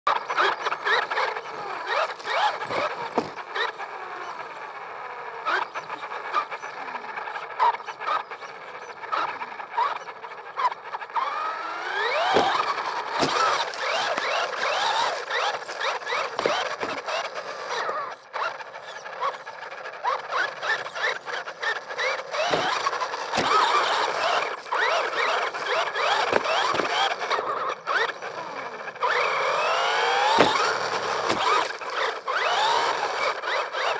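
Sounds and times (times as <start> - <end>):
squeals: 0.1 - 33.9
toy car motor whining: 0.1 - 33.9.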